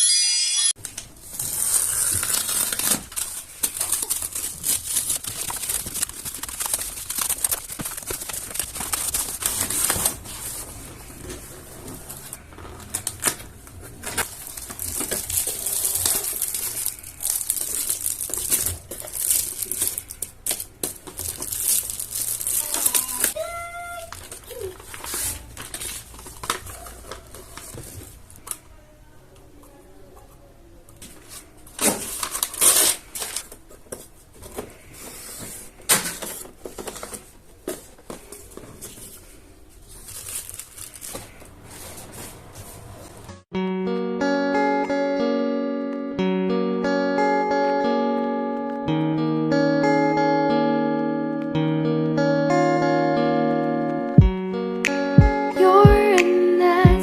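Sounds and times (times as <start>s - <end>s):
rustling and crinkling: 0.8s - 28.7s, 29.6s - 43.3s.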